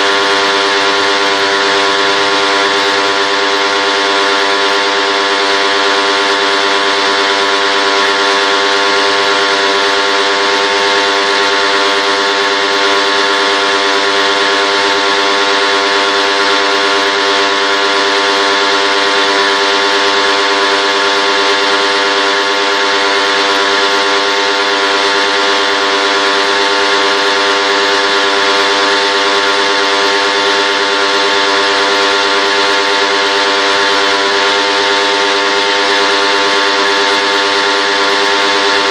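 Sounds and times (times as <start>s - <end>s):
machine hum: 0.0s - 38.9s.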